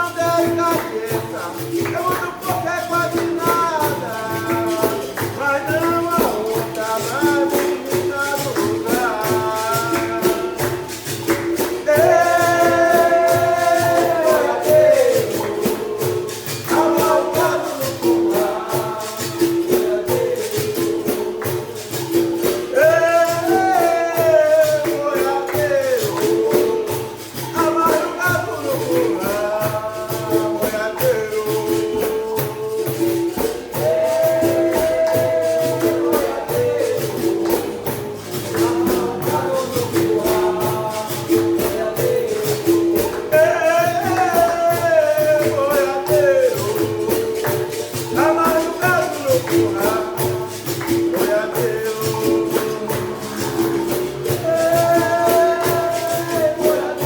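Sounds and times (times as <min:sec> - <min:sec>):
pandeiro jingle: 0:00.0 - 0:57.0
person singing: 0:11.6 - 0:21.4, 0:22.7 - 0:57.0.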